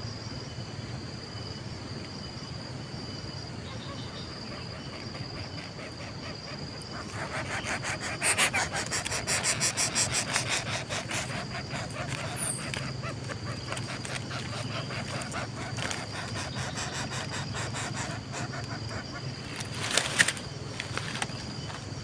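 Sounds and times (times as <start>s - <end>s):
high insect tone: 0.0s - 22.0s
chicks making raspy begging calls: 3.8s - 19.9s.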